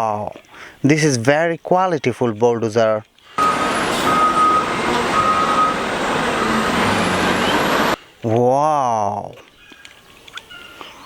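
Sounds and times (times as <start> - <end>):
heavy vehicle engine: 3.3 - 8.0
reversing alarm beeping: 3.4 - 8.0.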